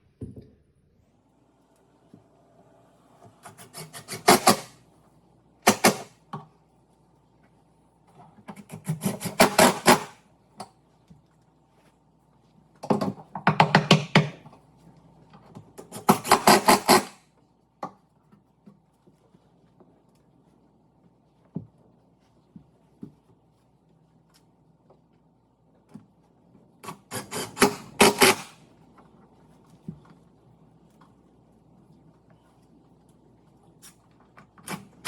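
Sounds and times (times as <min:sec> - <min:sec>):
faint steady hum: 0:00.0 - 0:35.0
tool working wood: 0:03.3 - 0:04.8, 0:05.7 - 0:06.1, 0:08.6 - 0:10.2, 0:15.8 - 0:17.2, 0:26.8 - 0:28.6.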